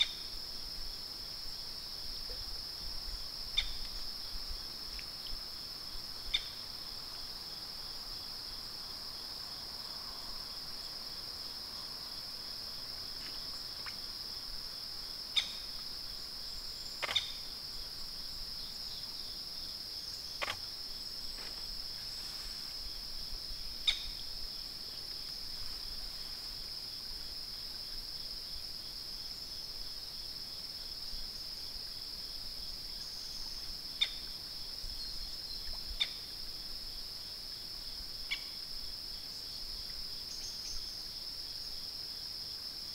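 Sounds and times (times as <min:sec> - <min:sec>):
short sharp clicks: 0:20.4 - 0:20.6.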